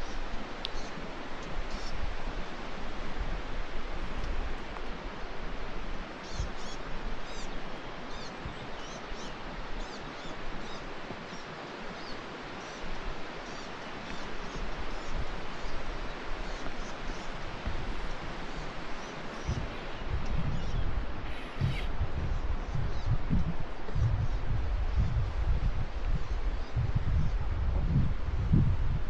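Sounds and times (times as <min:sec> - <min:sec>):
short high bird chirps: 0:21.2 - 0:21.9.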